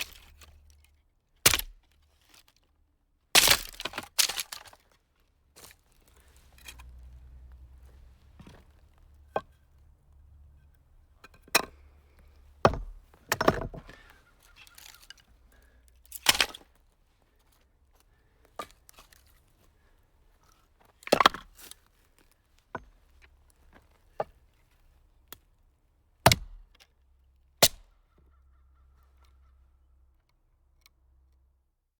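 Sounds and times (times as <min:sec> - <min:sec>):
axe chopping firewood: 0:00.0 - 0:00.5, 0:01.4 - 0:01.8, 0:03.4 - 0:04.8, 0:12.6 - 0:15.1, 0:16.1 - 0:16.6, 0:21.1 - 0:21.5, 0:26.2 - 0:26.7, 0:27.6 - 0:27.9.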